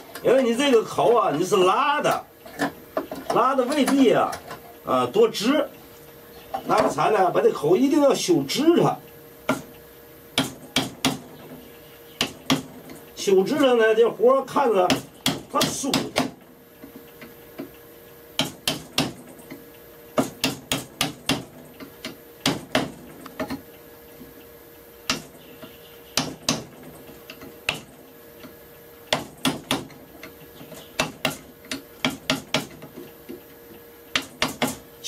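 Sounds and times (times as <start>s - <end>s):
chisel knocking on wood: 10.4s - 11.2s, 12.2s - 12.7s, 14.9s - 16.4s, 18.4s - 19.2s, 20.2s - 23.6s, 25.1s - 25.3s, 26.2s - 26.7s, 29.1s - 30.0s, 30.7s - 33.0s, 34.1s - 34.8s.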